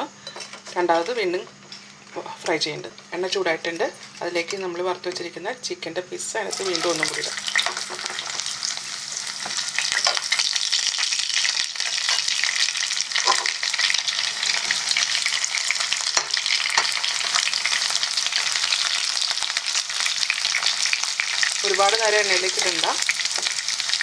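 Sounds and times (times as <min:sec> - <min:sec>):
chicken sizzling in hot oil: 0:06.5 - 0:24.0.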